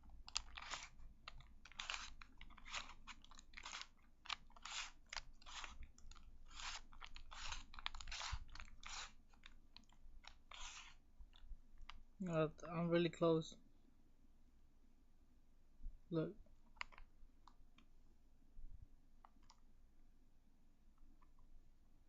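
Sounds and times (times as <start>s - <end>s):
plastic puzzle cube clicking: 0.3s - 11.0s, 16.7s - 17.1s.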